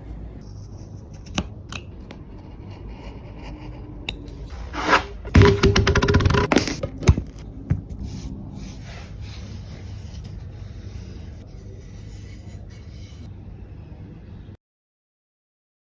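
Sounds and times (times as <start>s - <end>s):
knocks on wood: 5.3s - 7.8s.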